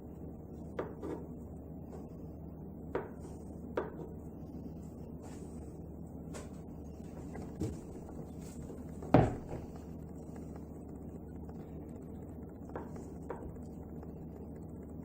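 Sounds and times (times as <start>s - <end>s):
steady low hum: 0.0s - 15.0s
knife knocking on cutting board: 9.1s - 9.6s.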